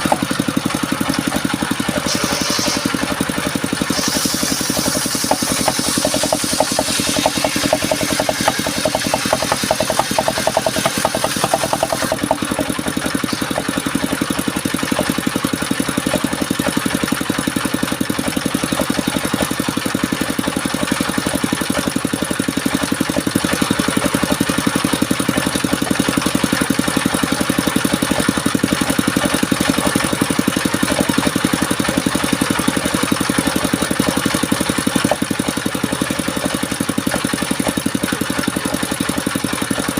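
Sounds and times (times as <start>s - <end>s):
saw machine engine running: 0.0s - 39.9s
high hiss: 2.0s - 3.1s, 3.8s - 12.2s.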